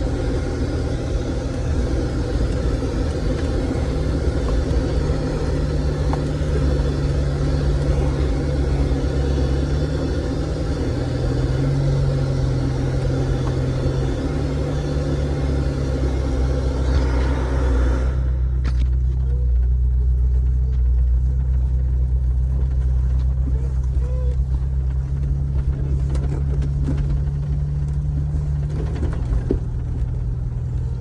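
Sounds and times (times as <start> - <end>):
wide rushing noise: 0.0 - 18.6
vehicle engine droning: 0.0 - 31.0.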